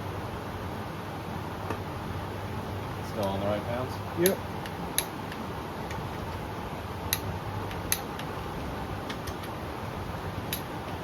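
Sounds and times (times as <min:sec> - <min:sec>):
low steady hum: 0:00.0 - 0:11.0
torque wrench clicks: 0:07.1 - 0:08.3.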